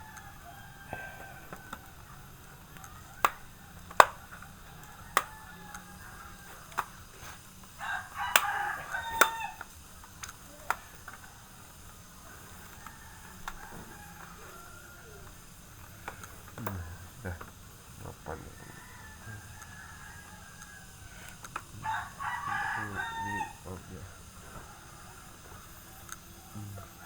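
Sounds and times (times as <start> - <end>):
rooster crowing: 0.0 - 27.0
plastic laptop parts clicking: 1.2 - 14.4, 15.2 - 17.6.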